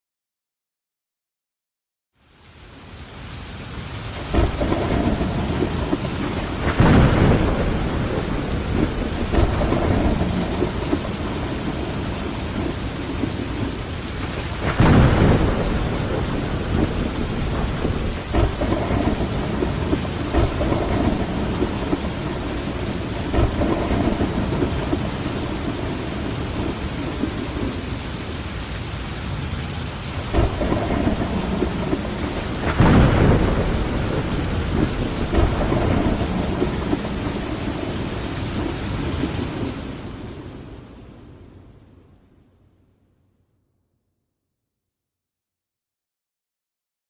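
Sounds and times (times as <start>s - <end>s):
rain on window glass: 2.2s - 41.5s
rolling thunder: 4.1s - 41.6s
sharp thunderclap: 4.2s - 28.1s, 30.0s - 40.7s.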